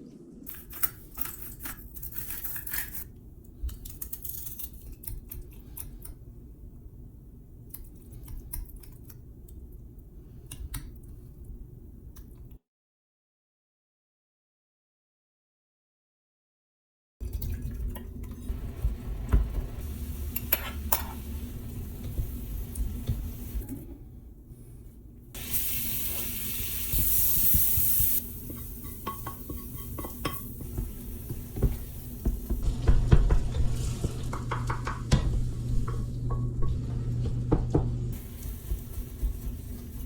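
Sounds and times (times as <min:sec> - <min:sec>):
utensils clinking and scraping: 0:00.5 - 0:03.1
food sizzling: 0:18.5 - 0:23.8, 0:25.4 - 0:36.9, 0:38.0 - 0:40.0
loud steady hiss: 0:25.4 - 0:32.9.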